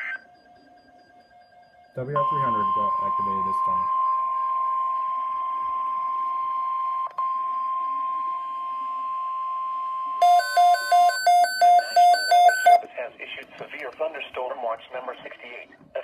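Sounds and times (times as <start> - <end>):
rapid loud alarm beeps: 0.0 - 8.1, 10.2 - 12.8
steady high alarm tone: 0.0 - 12.9.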